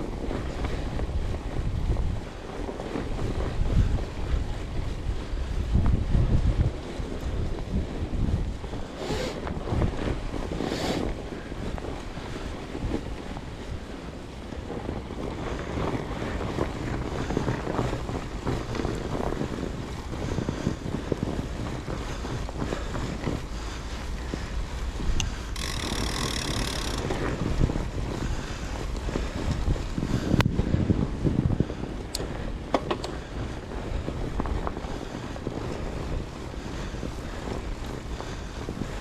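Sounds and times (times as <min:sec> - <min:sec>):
bike rumble: 0:00.0 - 0:39.0
wind buffeting microphone: 0:00.0 - 0:39.0
bike knocks and rattles: 0:24.3 - 0:28.3, 0:32.2 - 0:33.2.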